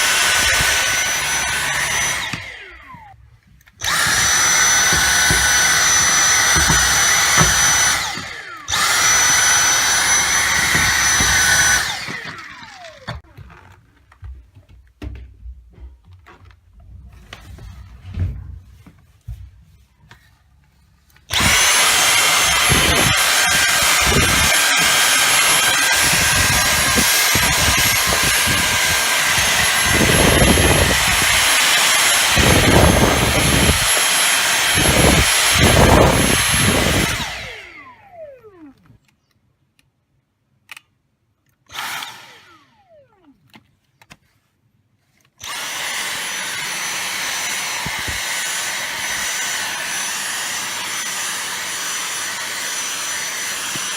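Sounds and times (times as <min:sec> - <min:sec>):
vacuum cleaner motor whine: 0:00.0 - 0:03.2, 0:03.8 - 0:13.8, 0:21.3 - 0:38.9, 0:41.7 - 0:43.4, 0:45.4 - 0:53.9
vacuum airflow rushing: 0:21.3 - 0:37.6.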